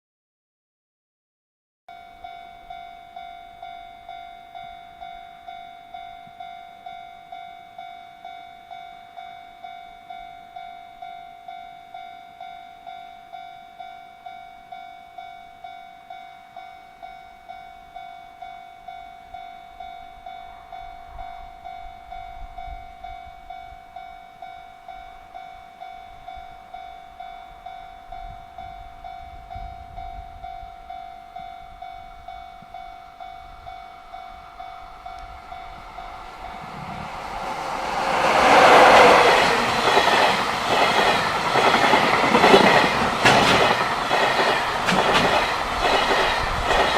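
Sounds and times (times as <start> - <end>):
level-crossing warning bell: 1.9 - 46.9
low train rumble: 24.8 - 46.9.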